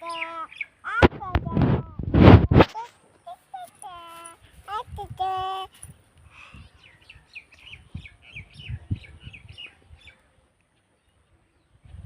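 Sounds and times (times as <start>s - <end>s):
bird chirping: 0.0s - 0.9s, 6.4s - 12.0s.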